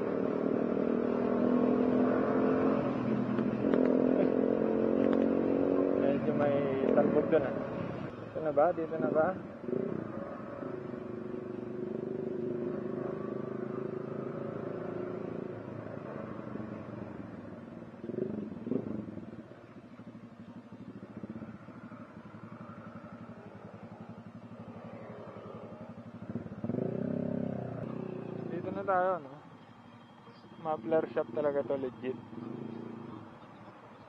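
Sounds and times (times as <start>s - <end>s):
motorcycle engine running: 9.0s - 33.8s.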